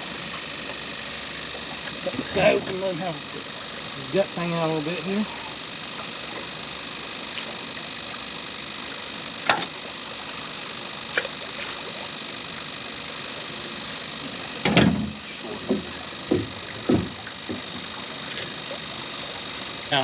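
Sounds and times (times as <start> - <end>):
motor hum: 0.0 - 20.0
sharp knocks: 14.6 - 17.8
loud thumps: 14.6 - 17.9.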